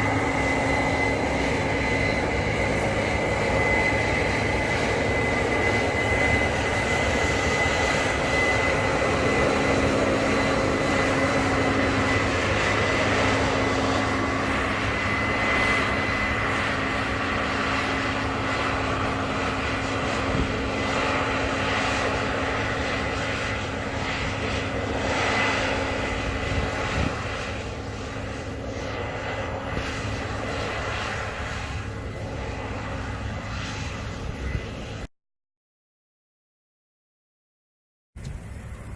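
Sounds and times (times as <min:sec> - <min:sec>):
combine harvester droning: 0:00.0 - 0:33.5
faint steady whine: 0:38.2 - 0:38.9.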